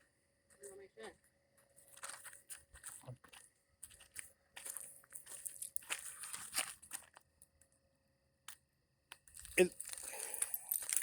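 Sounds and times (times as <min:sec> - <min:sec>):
footsteps on gravel: 0:01.9 - 0:07.2, 0:09.4 - 0:11.0.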